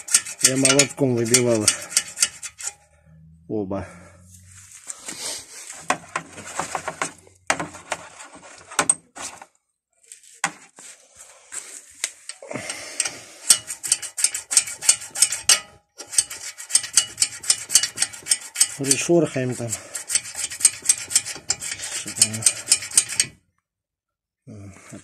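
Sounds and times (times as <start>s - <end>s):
metal parts clinking: 0.0s - 2.8s
scraping rust off metal: 0.0s - 3.2s, 4.4s - 9.5s, 12.2s - 23.4s.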